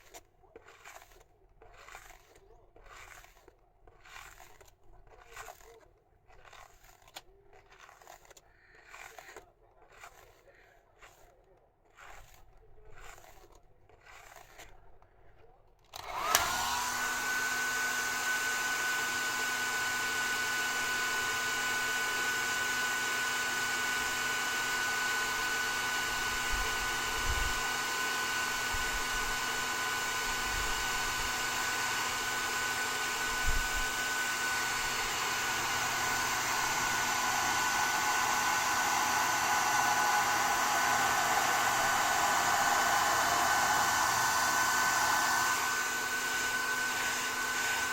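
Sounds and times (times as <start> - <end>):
hair dryer running: 15.9 - 47.9
hair dryer switch click: 16.0 - 17.1.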